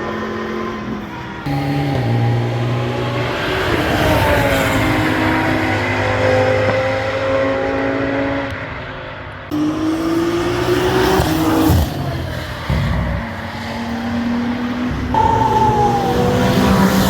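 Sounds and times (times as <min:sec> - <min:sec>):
race car accelerating: 0:00.0 - 0:17.0
race car engine passing: 0:09.5 - 0:17.0.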